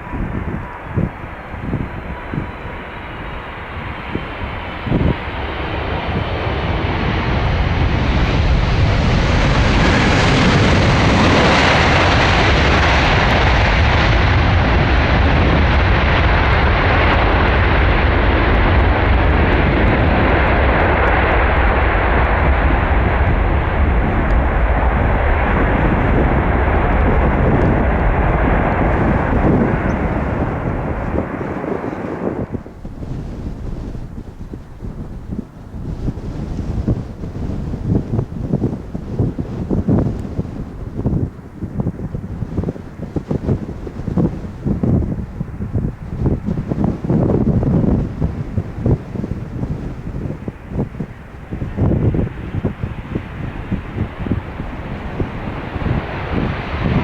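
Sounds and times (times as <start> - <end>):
jet engines roaring: 0.0 - 57.0.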